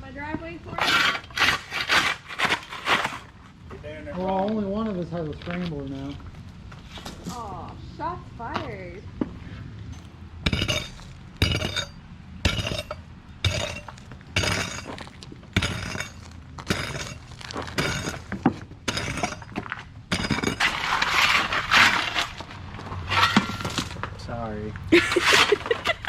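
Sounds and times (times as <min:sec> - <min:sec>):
scrape on asphalt: 0:00.6 - 0:03.6, 0:05.4 - 0:07.5, 0:12.5 - 0:24.1
hand tools breaking asphalt: 0:00.8 - 0:03.3, 0:10.0 - 0:24.1, 0:25.0 - 0:26.0
asphalt chunks clinking: 0:09.9 - 0:24.3.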